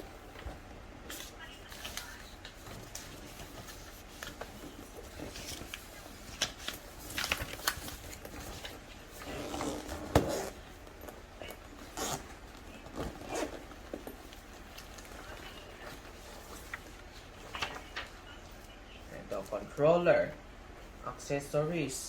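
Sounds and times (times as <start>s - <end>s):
packaging rustling: 0.6s - 18.1s.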